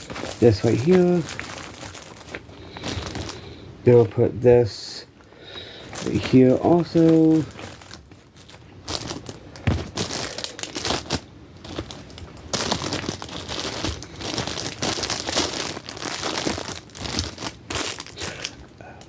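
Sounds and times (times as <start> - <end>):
backpack rustling and crinkling: 0.0 - 3.5, 5.5 - 18.5.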